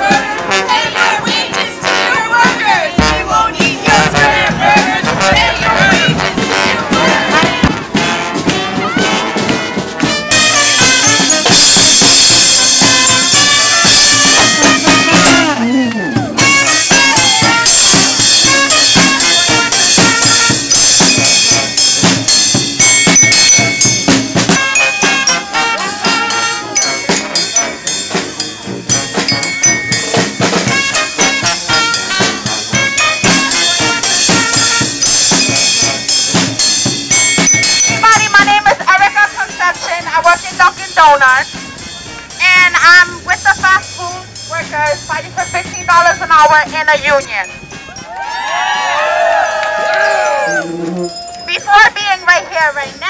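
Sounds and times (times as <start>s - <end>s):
brass horns sustained notes: 0.0s - 22.0s, 24.5s - 29.6s, 30.7s - 36.3s, 39.0s - 48.1s
steady drum beat: 0.0s - 50.0s.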